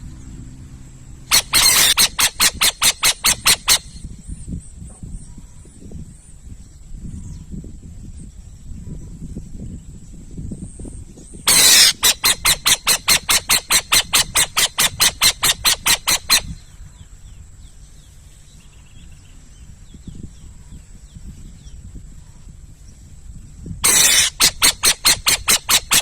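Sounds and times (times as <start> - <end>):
high-pitched whine: 0.0 - 4.3
owl screeching: 1.3 - 4.0, 11.5 - 16.6, 23.8 - 26.0.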